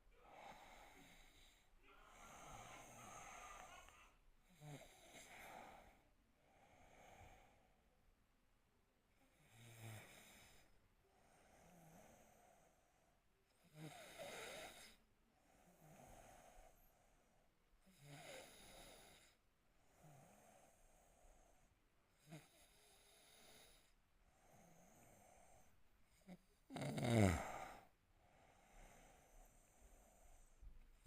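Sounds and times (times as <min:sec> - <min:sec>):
soft breathing: 0:00.0 - 0:07.9, 0:10.0 - 0:31.0
man snoring: 0:00.2 - 0:06.0, 0:09.3 - 0:10.6, 0:13.6 - 0:15.0, 0:17.8 - 0:19.4, 0:20.0 - 0:20.8, 0:22.2 - 0:27.9.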